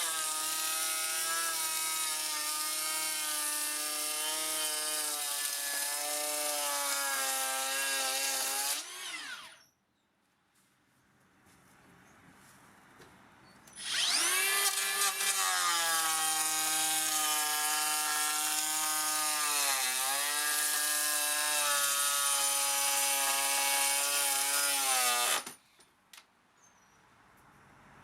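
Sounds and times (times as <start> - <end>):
planer cutting wood: 0.0 - 9.6, 13.8 - 25.6
electric planer whining: 13.8 - 22.2.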